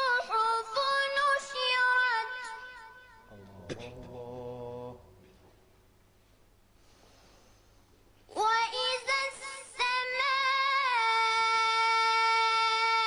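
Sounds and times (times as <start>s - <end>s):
melodic recitation by high voice: 0.0s - 5.0s, 8.3s - 13.0s.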